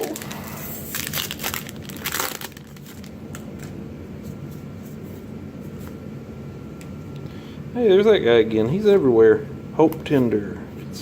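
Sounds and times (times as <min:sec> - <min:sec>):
foil wrapper crinkling: 0:00.0 - 0:03.8.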